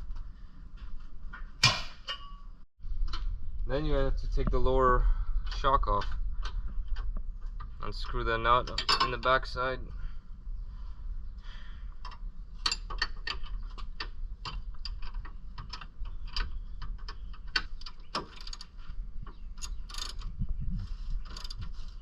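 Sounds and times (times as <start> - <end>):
ratchet wrench clicking: 19.6 - 20.3.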